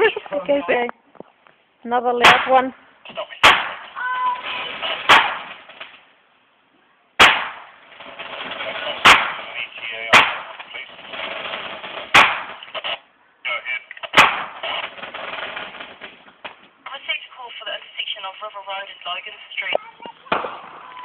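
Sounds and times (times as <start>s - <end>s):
firework bangs: 2.2s - 6.0s, 7.2s - 13.0s, 14.1s - 16.7s, 19.9s - 21.0s.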